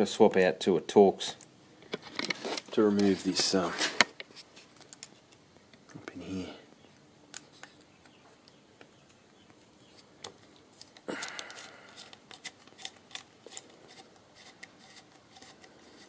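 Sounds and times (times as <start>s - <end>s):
scraping rustle: 2.0s - 5.2s.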